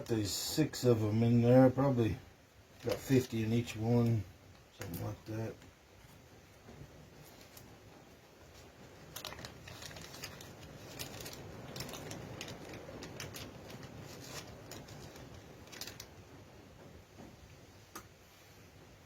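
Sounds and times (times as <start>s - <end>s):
packaging rustling: 2.8s - 4.2s, 7.2s - 7.8s, 8.5s - 16.3s.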